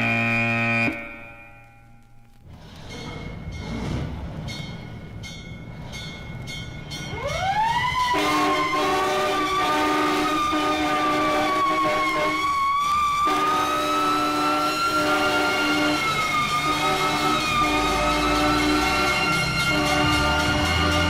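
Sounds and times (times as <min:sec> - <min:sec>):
train rumbling with clacks: 0:00.0 - 0:21.0
rising wavering wail: 0:07.1 - 0:21.0
horn-like chord: 0:08.2 - 0:12.4, 0:13.3 - 0:21.0.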